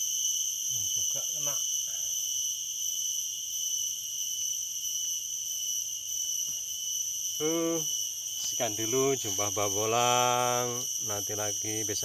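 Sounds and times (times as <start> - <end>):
crickets chirping: 0.0 - 12.0.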